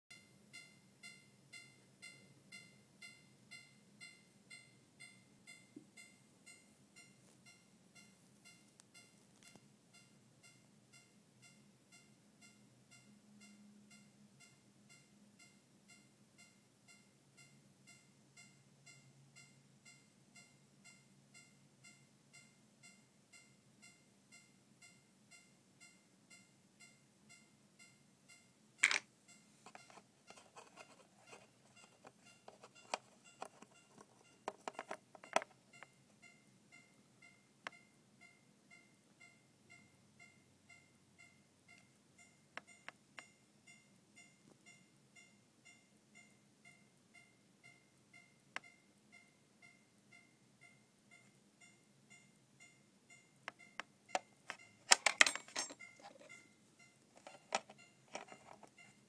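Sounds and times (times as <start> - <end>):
clicks and knocks: 28.8 - 35.9, 54.1 - 56.4, 57.2 - 58.8.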